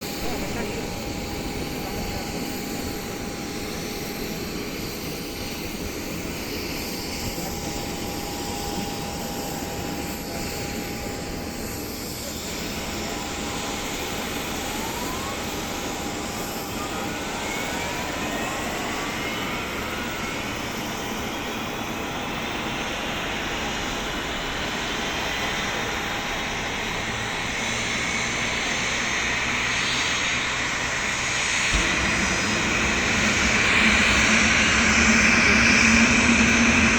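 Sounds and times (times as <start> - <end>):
jet engines roaring: 0.0 - 36.9
turbine whine rising: 0.1 - 36.9.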